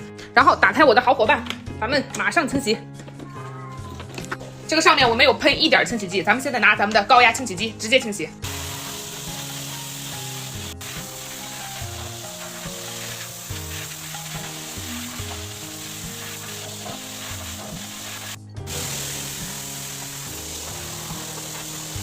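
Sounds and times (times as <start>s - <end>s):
background music: 0.0s - 22.0s
pressure washer spraying water: 8.4s - 22.0s.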